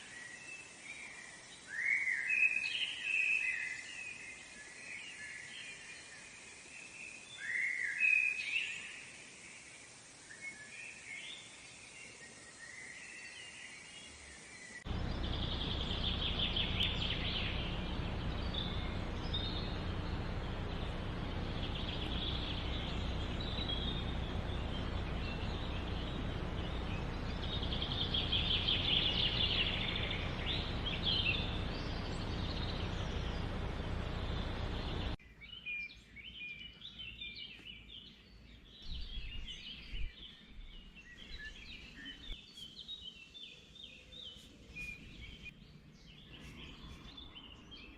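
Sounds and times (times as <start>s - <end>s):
gulls calling: 14.9s - 35.2s
noisy background with low hum: 14.9s - 35.2s.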